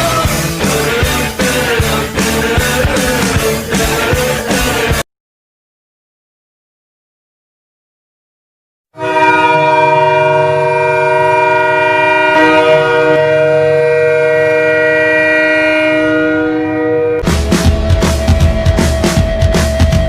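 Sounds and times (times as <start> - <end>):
loud rock music: 0.0 - 5.0, 17.2 - 20.0
goal horn chord: 8.9 - 20.0.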